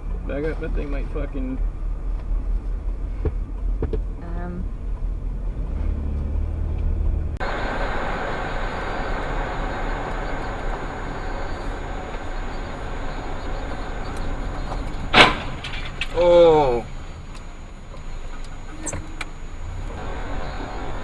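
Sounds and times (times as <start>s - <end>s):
car engine idling hum: 0.0s - 21.0s
road and engine noise: 0.0s - 21.0s
loud collision bang: 7.4s - 17.1s.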